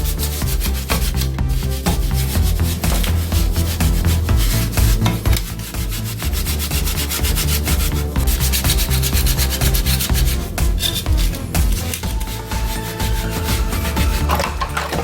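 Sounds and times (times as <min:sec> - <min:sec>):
sandpaper rubbing on plastic: 0:00.0 - 0:15.0.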